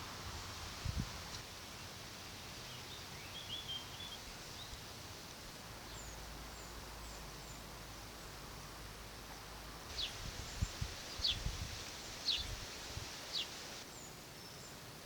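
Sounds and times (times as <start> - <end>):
distant bird chirps: 9.9 - 11.5.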